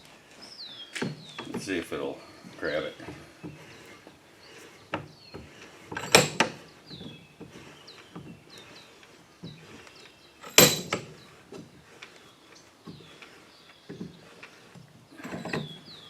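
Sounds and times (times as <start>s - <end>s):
bench vise metal clanks and knocks: 4.9s - 6.6s, 10.4s - 11.7s, 15.2s - 15.8s
loud ringing metal clanks: 10.4s - 11.2s.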